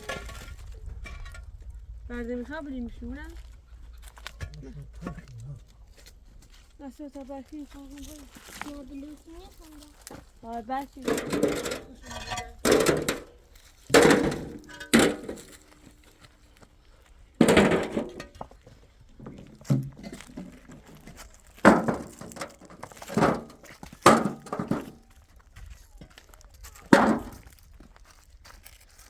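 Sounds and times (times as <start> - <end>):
knocks and thuds: 11.0 - 15.9, 17.4 - 25.0, 26.9 - 27.6.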